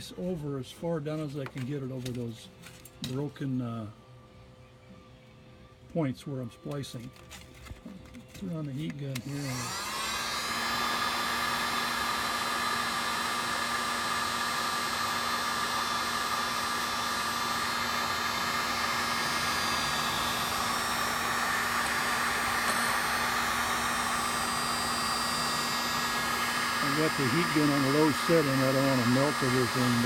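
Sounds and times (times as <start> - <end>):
heat gun blowing hiss: 9.2 - 30.0.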